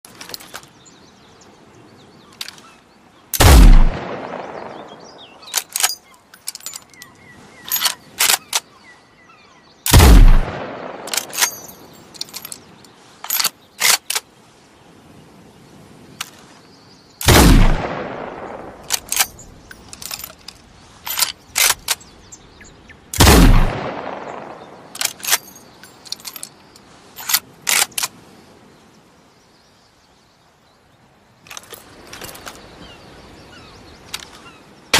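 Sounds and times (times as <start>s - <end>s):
rifle shots with echo: 3.4s - 5.6s, 9.9s - 11.7s, 17.2s - 19.2s, 23.2s - 25.2s
rifle bolt clicking: 11.0s - 12.5s.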